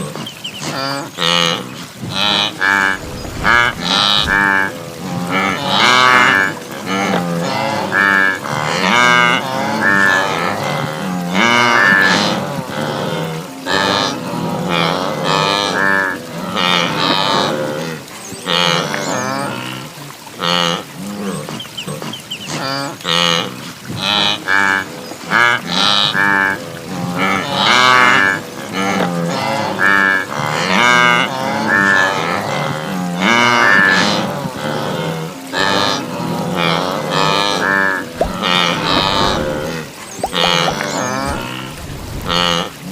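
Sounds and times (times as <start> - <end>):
wildebeest herd calling: 35.6 - 42.7.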